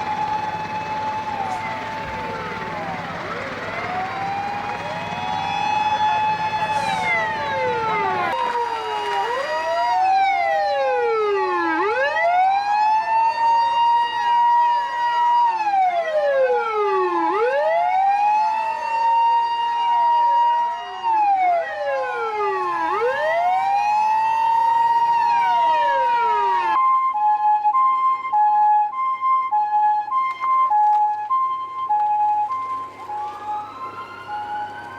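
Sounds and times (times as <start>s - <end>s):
emergency siren wailing: 0.0s - 34.9s
two-tone hi-lo siren: 0.0s - 34.9s.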